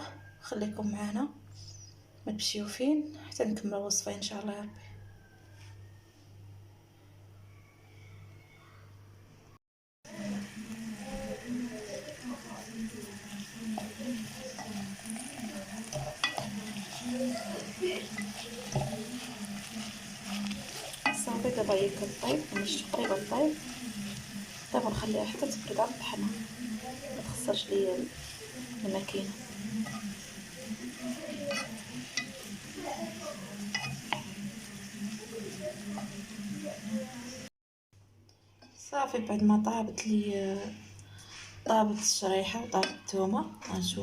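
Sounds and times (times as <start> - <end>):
food sizzling in oil: 10.1 - 37.5
utensil clinking against pot: 13.7 - 17.3, 18.0 - 21.6, 31.4 - 32.5, 33.6 - 34.4.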